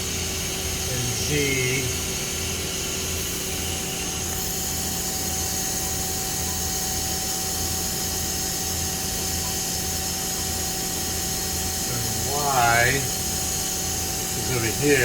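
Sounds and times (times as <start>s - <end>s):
machine hum: 0.0s - 5.2s, 9.2s - 15.0s
thin servo whine: 0.0s - 15.0s.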